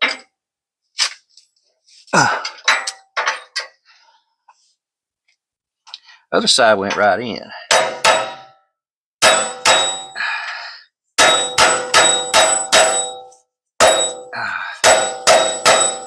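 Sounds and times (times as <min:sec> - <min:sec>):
hammer striking steel: 0:07.7 - 0:08.6, 0:09.2 - 0:10.2, 0:11.2 - 0:16.0.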